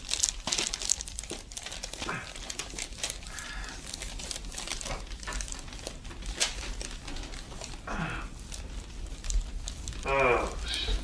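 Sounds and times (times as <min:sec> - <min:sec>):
soft rustling and crinkling: 0:00.0 - 0:11.0
person groaning: 0:02.0 - 0:02.4, 0:07.9 - 0:08.3, 0:10.0 - 0:10.7.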